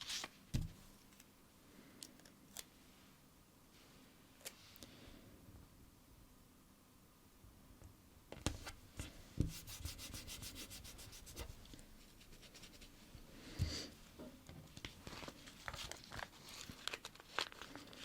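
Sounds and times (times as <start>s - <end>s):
fingers rubbing sticker on paper: 9.5s - 11.5s.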